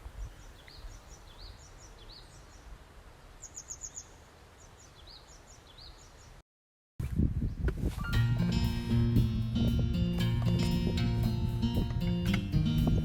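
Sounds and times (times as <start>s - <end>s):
small birds chirping: 0.0s - 6.4s.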